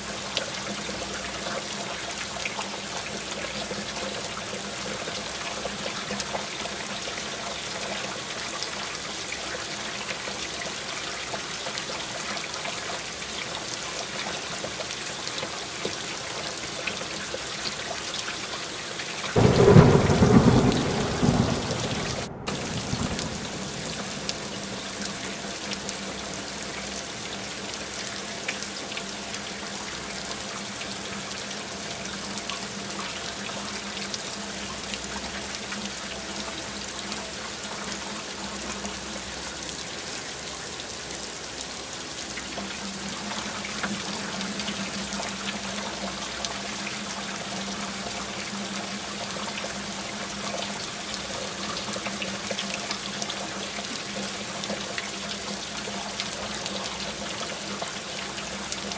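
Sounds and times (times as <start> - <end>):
steady rain falling: 0.0 - 58.9
loud thunderclap: 19.4 - 24.8.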